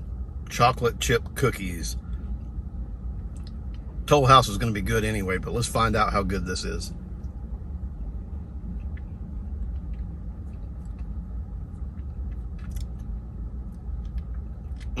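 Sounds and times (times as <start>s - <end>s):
low background rumble: 0.0s - 15.0s
faint chewing: 8.7s - 15.0s.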